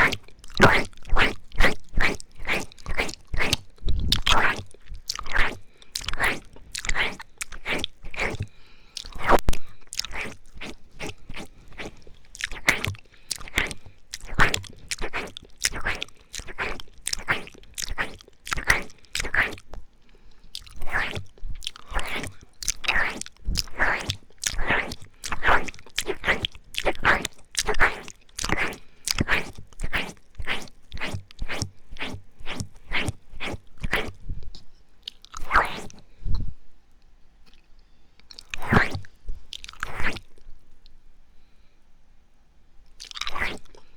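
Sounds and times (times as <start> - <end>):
wet mouth licks and smacks: 0.0 - 19.8, 20.5 - 36.0.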